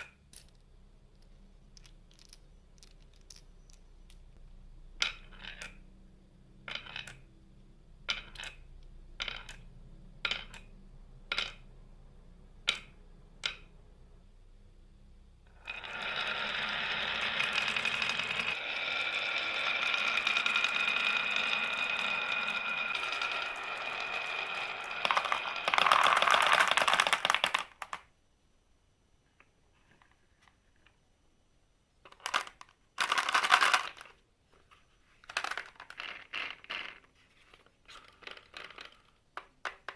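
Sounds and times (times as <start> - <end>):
marbles clattering: 0.0 - 4.4, 5.0 - 5.8, 6.6 - 7.3, 8.1 - 9.6, 15.5 - 28.1, 32.0 - 34.2, 35.2 - 37.1, 37.9 - 39.9
marbles rolling with ringing hum: 0.0 - 11.7, 12.6 - 13.8, 15.4 - 27.9, 32.1 - 34.1, 35.3 - 37.1, 38.0 - 39.2
marbles clicking on track: 5.0 - 5.9, 6.6 - 7.3, 8.0 - 10.7, 11.3 - 11.7, 12.7 - 13.7, 15.5 - 28.0, 32.1 - 34.1, 35.3 - 37.0.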